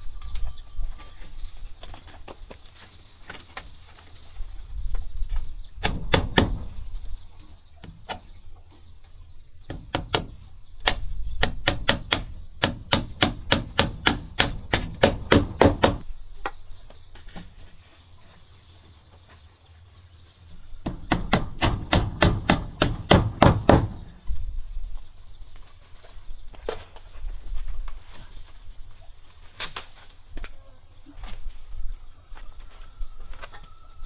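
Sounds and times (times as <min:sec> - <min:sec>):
hammer blows: 0:09.7 - 0:16.0.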